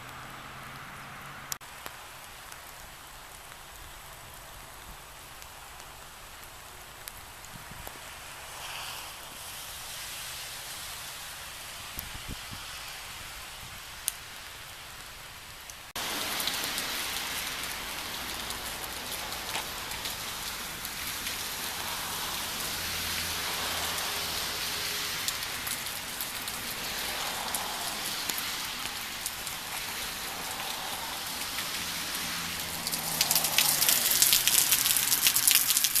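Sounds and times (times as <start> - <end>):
hard rain falling: 1.5 - 36.0
raindrops striking as sharp clicks: 15.5 - 36.0.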